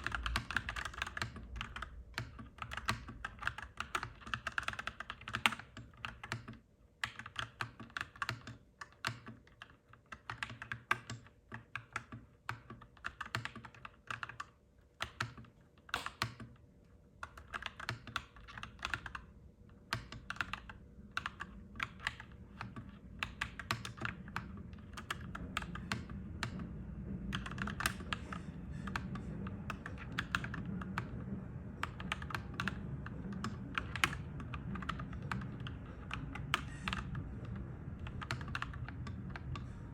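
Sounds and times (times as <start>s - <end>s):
mechanical keyboard typing: 0.0s - 16.6s, 17.2s - 19.3s, 19.9s - 26.7s, 27.3s - 39.9s
low rumble: 20.5s - 39.9s.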